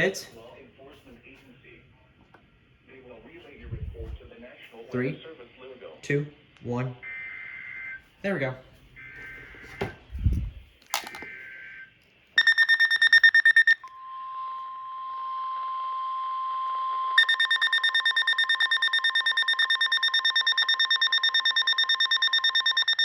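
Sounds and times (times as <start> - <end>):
rapid electronic beeping: 12.4 - 13.8, 17.2 - 23.0
fast-pulsing alarm beep: 12.4 - 13.9, 17.2 - 23.0
steady single-pitch alert tone: 12.4 - 23.0.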